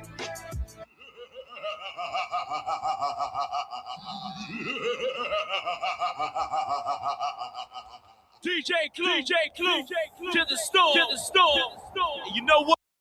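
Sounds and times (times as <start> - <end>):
laughter-like pulsing voice: 0.9 - 8.2.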